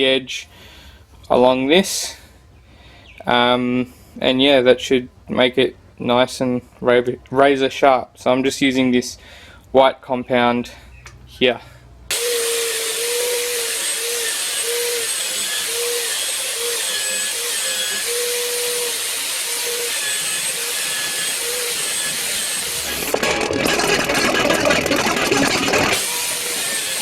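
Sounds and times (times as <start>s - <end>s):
buffing wheel motor whirring: 12.1s - 27.0s.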